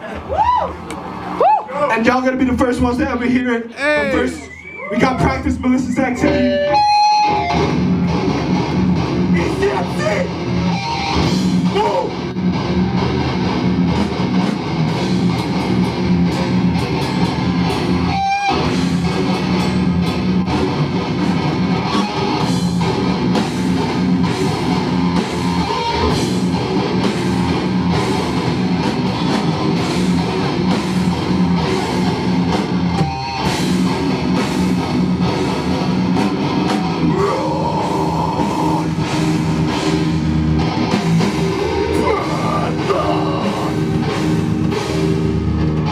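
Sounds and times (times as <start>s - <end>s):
distorted electric guitars: 3.8s - 45.9s
pounding drum kit: 6.2s - 45.9s.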